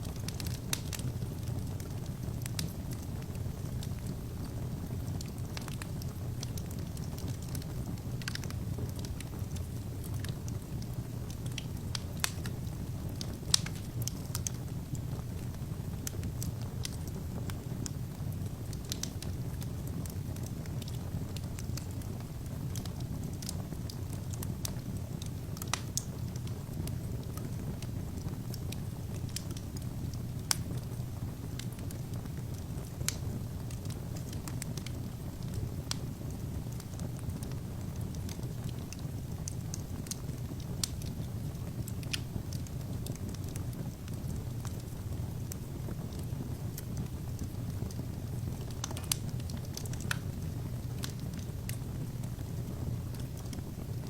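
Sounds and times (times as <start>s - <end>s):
logs crackling and popping: 0.0s - 54.0s
flames rushing: 22.8s - 52.8s.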